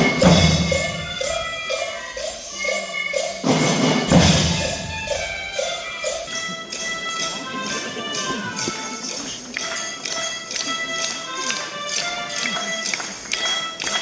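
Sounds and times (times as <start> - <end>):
drum band playing: 0.0 - 10.7
tambourine-like jingles: 0.0 - 14.0.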